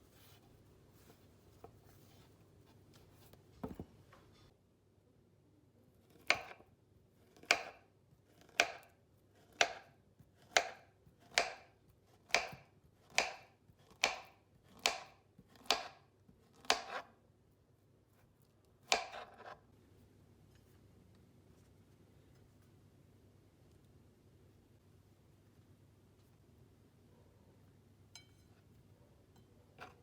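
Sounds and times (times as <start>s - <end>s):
knife chopping on cutting board: 6.2s - 6.7s, 7.4s - 8.9s, 9.5s - 17.1s, 18.8s - 19.6s.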